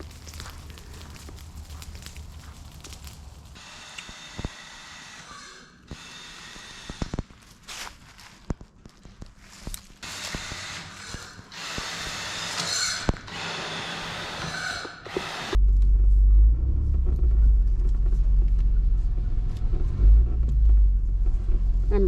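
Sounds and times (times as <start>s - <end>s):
small vehicle engine rumble: 15.6s - 22.0s.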